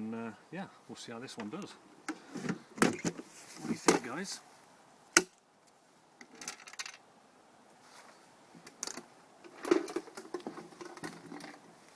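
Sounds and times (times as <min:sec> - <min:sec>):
metal can clinks and rustles: 0:08.8 - 0:11.7.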